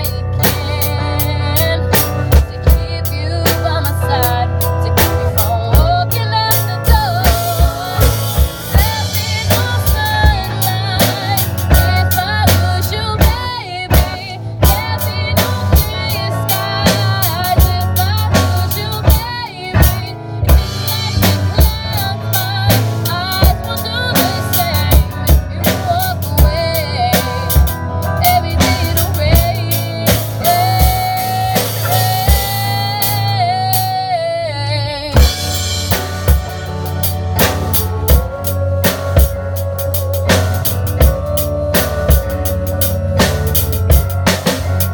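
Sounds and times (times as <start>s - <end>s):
drum kit beat: 0.0s - 34.1s, 35.1s - 44.9s
live band playing pop: 0.0s - 44.9s.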